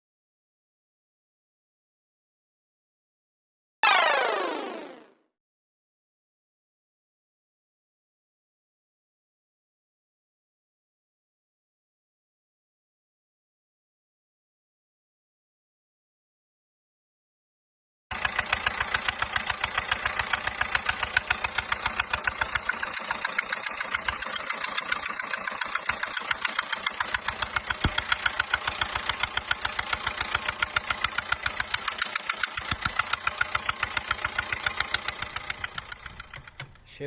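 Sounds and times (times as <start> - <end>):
rhythmic fuel injector ticking: 18.1 - 36.9
diesel engine idling: 18.1 - 37.0.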